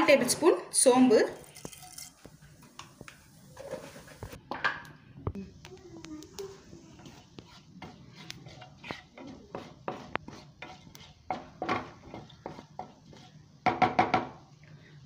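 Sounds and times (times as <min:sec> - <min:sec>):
seeds spluttering in hot oil: 0:01.4 - 0:03.2.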